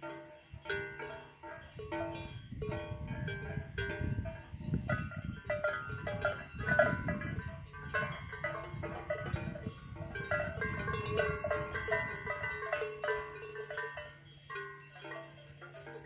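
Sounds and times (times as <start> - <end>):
cowbells clanking: 0.0 - 16.0.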